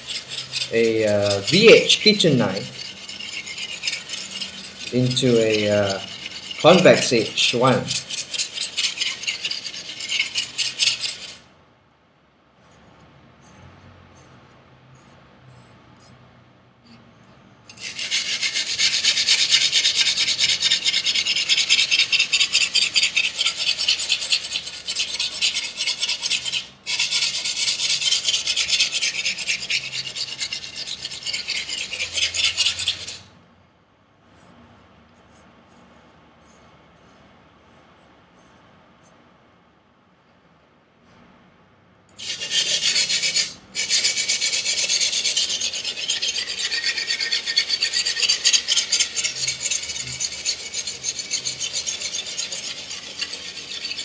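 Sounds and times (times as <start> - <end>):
knife scraping on sharpening stone: 0.0 - 11.4, 17.7 - 33.3, 42.2 - 54.0.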